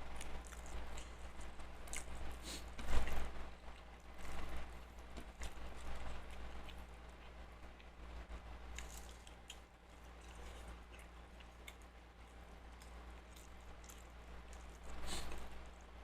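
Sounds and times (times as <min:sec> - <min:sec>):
low electrical hum: 0:00.0 - 0:16.0
person chewing food: 0:00.0 - 0:16.0.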